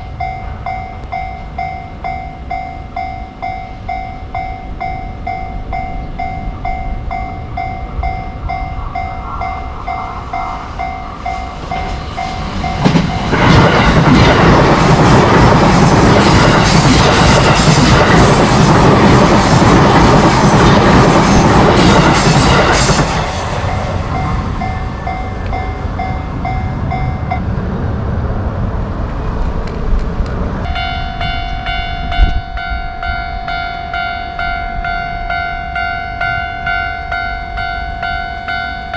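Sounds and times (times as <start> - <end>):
higher brighter crossing bell: 0.0 - 14.1, 20.0 - 27.4, 30.7 - 38.9
electric train passing: 0.0 - 38.9.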